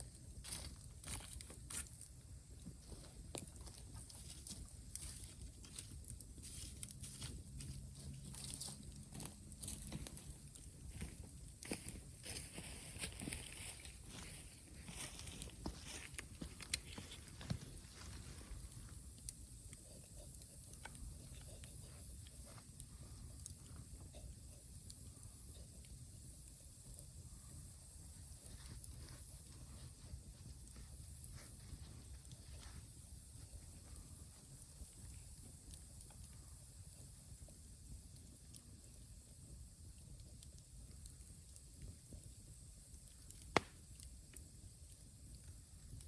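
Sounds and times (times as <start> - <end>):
campfire crackling: 0.0 - 46.0
steady high hiss: 10.5 - 38.0.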